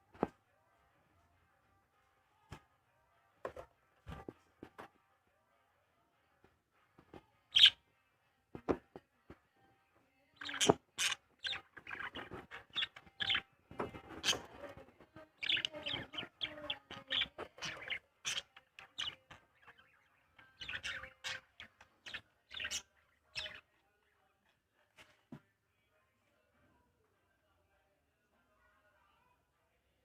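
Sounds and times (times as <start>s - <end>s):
small birds chirping: 7.5s - 7.8s, 10.3s - 24.6s.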